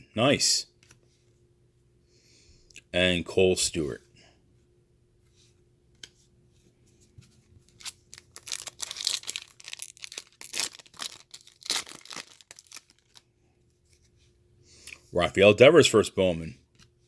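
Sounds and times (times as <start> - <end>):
foil wrapper tearing and crinkling: 7.8 - 13.2.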